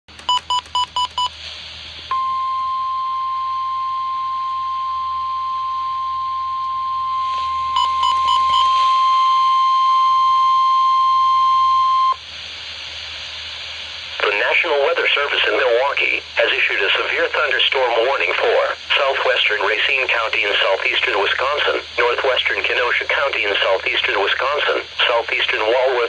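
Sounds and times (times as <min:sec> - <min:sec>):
radio hiss: 0:01.2 - 0:02.1, 0:07.2 - 0:09.0, 0:12.1 - 0:26.0
short electronic beeps: 0:02.1 - 0:12.2
steady warning alarm tone: 0:02.1 - 0:12.2.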